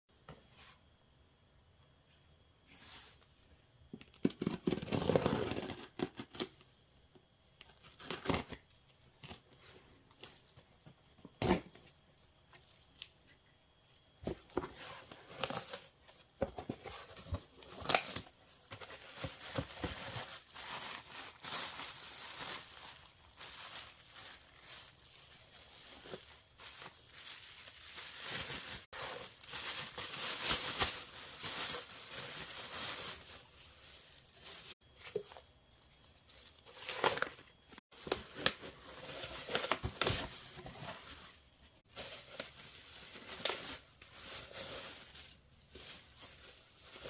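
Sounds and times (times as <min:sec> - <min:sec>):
packaging tearing and rustling: 0:04.2 - 0:06.5, 0:14.5 - 0:16.0, 0:16.6 - 0:34.8, 0:36.5 - 0:41.2.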